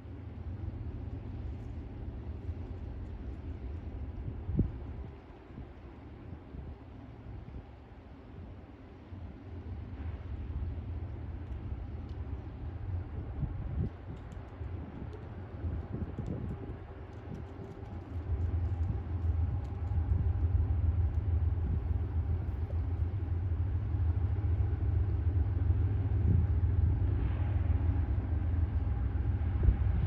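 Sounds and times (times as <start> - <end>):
low vehicle rumble: 9.0 - 30.0.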